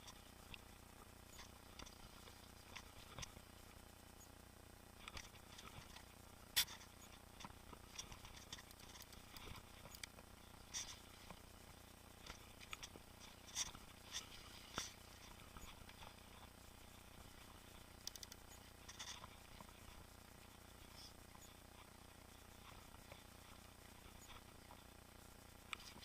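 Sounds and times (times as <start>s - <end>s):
mountain bike rattling and clicking: 5.0s - 11.3s, 12.2s - 16.5s, 18.0s - 19.9s.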